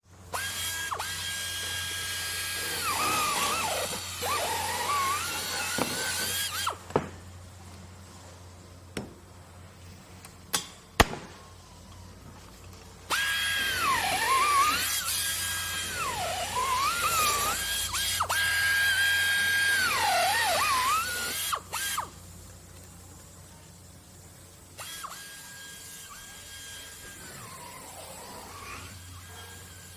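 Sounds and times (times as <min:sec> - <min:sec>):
power drill whining: 0:00.3 - 0:06.8, 0:13.1 - 0:22.1, 0:24.8 - 0:29.9.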